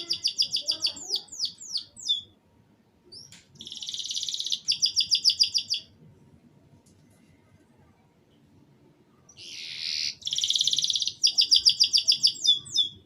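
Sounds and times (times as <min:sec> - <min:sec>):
canary singing: 0:00.0 - 0:02.4, 0:03.1 - 0:05.9, 0:09.3 - 0:13.0.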